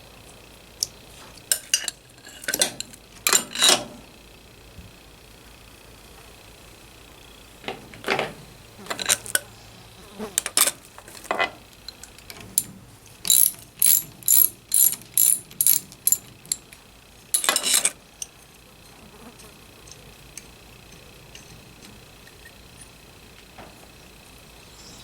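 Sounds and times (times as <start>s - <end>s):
ratchet wrench clicking: 11.9s - 18.4s.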